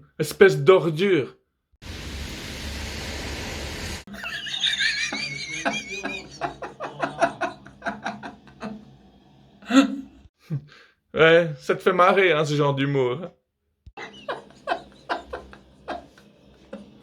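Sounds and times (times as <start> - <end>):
static hiss: 1.8 - 4.0.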